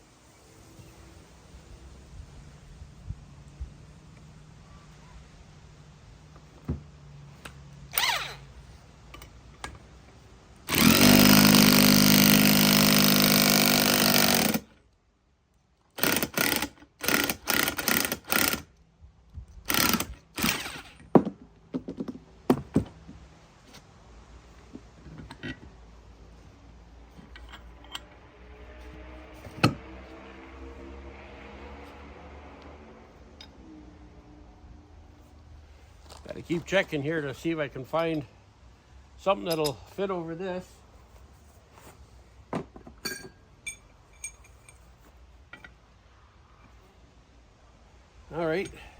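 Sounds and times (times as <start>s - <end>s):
power tool running: 10.7s - 14.7s, 16.0s - 18.6s, 19.7s - 21.0s
power tool short bursts: 10.7s - 14.7s, 19.7s - 21.0s
metal knocks and clinks: 43.0s - 44.9s.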